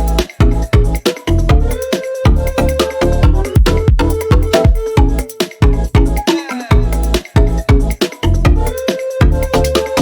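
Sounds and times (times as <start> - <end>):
electronic dance music: 2.6 - 10.0.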